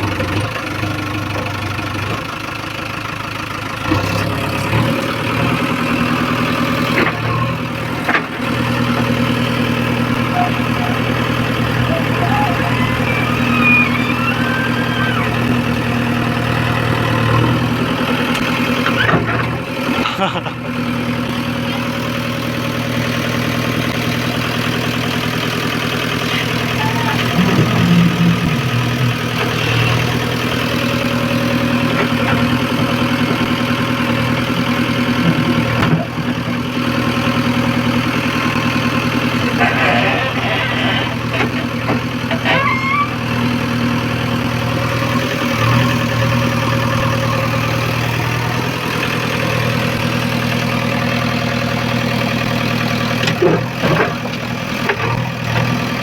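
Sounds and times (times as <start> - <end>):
diesel engine idling: 0.0 - 56.0.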